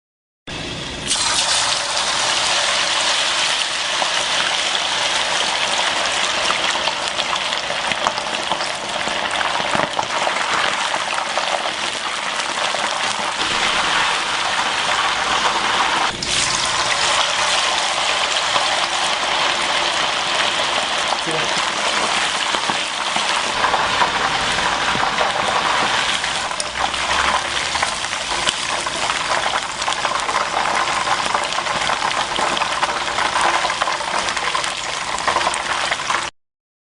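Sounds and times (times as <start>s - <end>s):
bacon and eggs sizzling in a pan: 0.8s - 36.3s.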